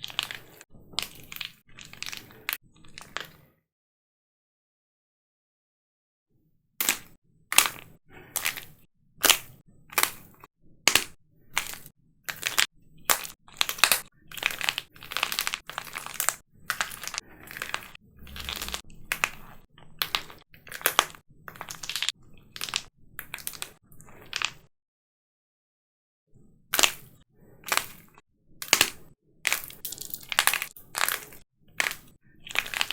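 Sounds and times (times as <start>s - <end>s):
dried clay cracking and crushing: 0.0s - 3.5s, 6.8s - 19.4s, 20.0s - 24.7s, 27.6s - 32.9s.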